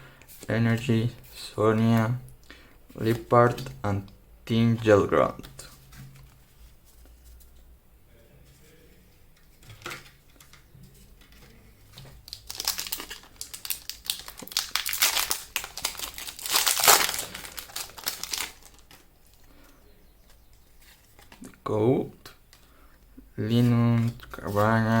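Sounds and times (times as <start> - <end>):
foil wrapper crinkling and tearing: 12.2 - 19.4.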